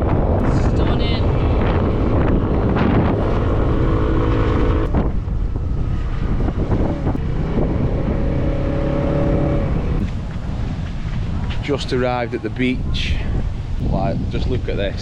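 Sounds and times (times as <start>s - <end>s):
wind rumbling on microphone: 0.0s - 15.0s
vehicle engine running: 0.4s - 10.1s.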